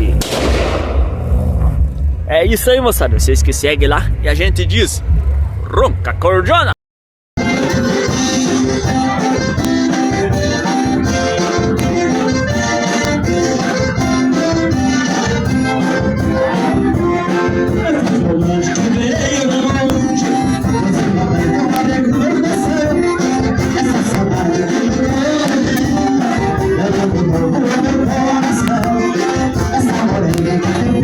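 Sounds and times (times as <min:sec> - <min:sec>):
accordion playing lively tune: 0:07.4 - 0:31.0
steady rhythmic beat: 0:07.4 - 0:31.0.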